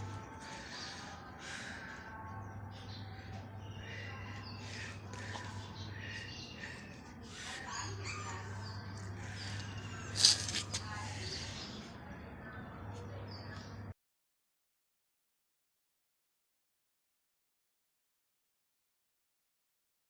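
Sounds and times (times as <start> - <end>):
low steady hum: 0.0 - 13.8.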